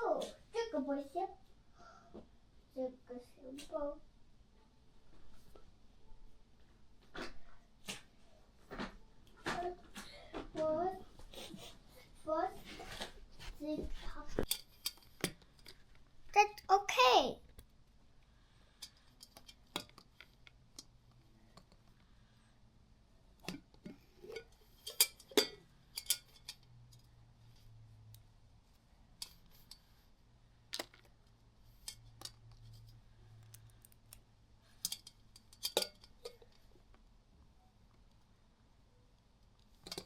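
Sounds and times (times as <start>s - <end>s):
faint low room hum: 0.0s - 40.0s
hard objects clicking and knocking: 18.8s - 22.0s, 30.7s - 36.6s, 39.6s - 40.0s.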